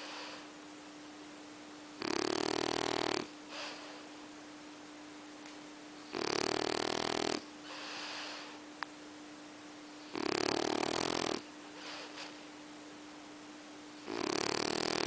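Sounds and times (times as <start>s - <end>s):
pet snoring: 2.0s - 4.0s, 6.1s - 8.6s, 10.0s - 12.3s, 14.0s - 15.0s.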